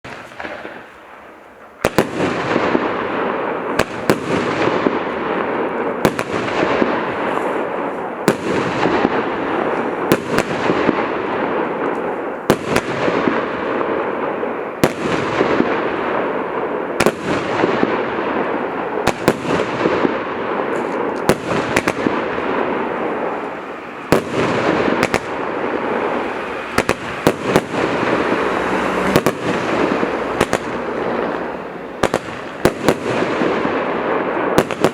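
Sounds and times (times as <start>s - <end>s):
continuous firework hiss: 0.0s - 34.9s
firework bangs: 0.0s - 34.9s.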